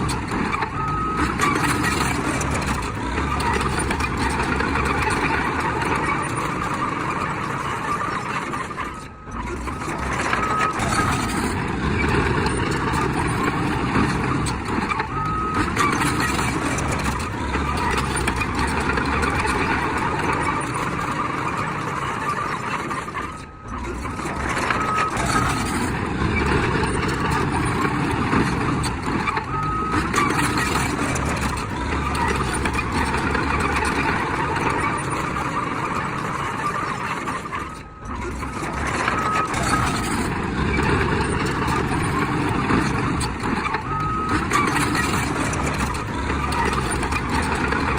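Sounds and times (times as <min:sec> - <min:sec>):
diesel machinery engine running: 0:00.0 - 0:47.9
reversing alarm beeps: 0:00.6 - 0:02.7, 0:10.1 - 0:11.5, 0:15.0 - 0:17.0, 0:24.6 - 0:25.9, 0:29.4 - 0:31.6, 0:43.8 - 0:45.9.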